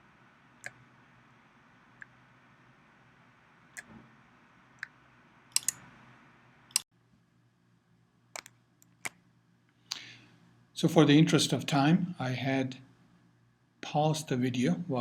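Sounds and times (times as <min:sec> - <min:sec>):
computer mouse clicking: 0:05.5 - 0:05.8, 0:08.4 - 0:09.2.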